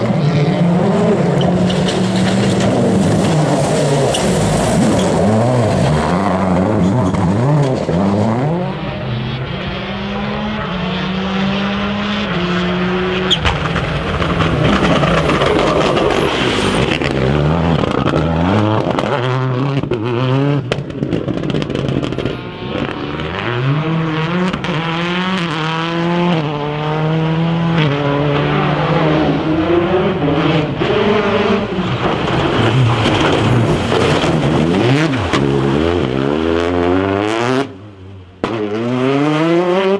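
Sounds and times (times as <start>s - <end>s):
rally car engines revving: 0.0s - 39.9s.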